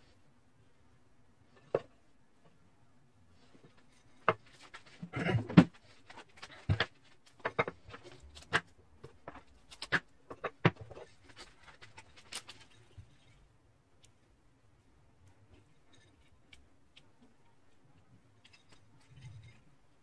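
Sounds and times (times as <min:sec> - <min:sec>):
hard objects clicking and knocking: 0:03.7 - 0:13.0.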